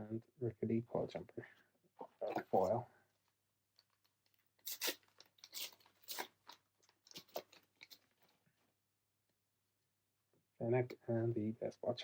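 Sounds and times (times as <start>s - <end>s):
foil wrapper crinkling and tearing: 3.8s - 8.2s.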